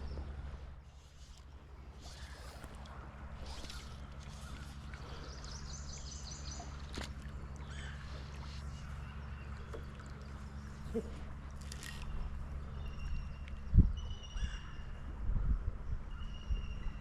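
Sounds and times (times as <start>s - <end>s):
low outdoor rumble: 0.0s - 17.0s
bird calling: 3.4s - 15.0s.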